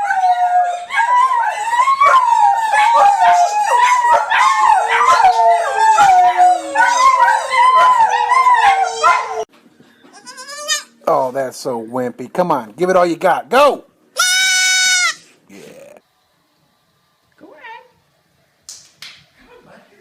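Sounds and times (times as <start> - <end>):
dogs howling: 0.0 - 9.5
dogs yipping: 0.0 - 9.5.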